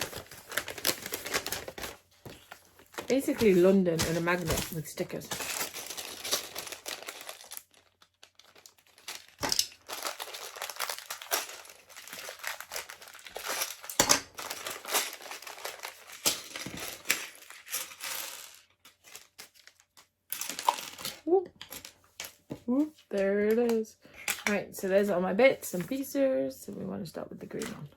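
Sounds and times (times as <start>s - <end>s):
plastic bag crinkling and tearing: 0.0s - 21.4s.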